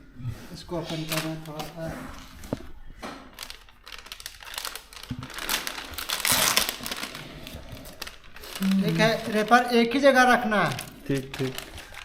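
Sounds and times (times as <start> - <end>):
plastic wrapper tearing and crinkling: 0.8 - 2.7, 3.3 - 12.0.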